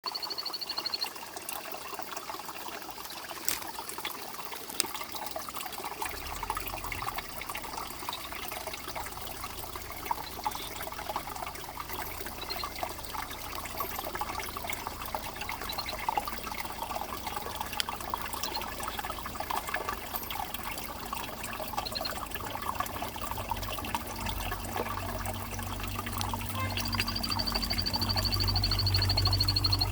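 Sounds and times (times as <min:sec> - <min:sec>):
stream water running: 0:00.0 - 0:29.9
faint high frog notes: 0:25.0 - 0:29.9
frog trilled whistle call: 0:26.6 - 0:29.9.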